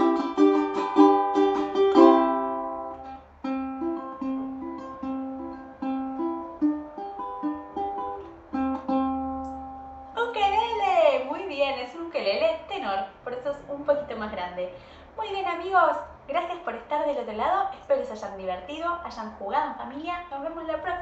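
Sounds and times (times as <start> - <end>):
ukulele melody picked: 0.0 - 10.2
ukulele strummed chords: 0.0 - 10.2.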